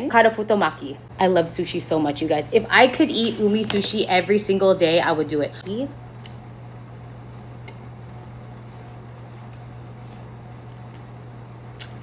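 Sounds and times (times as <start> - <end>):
low electrical hum: 0.0 - 12.0
person chewing: 7.6 - 11.2, 11.8 - 12.0
wet mouth clicks: 11.8 - 12.0.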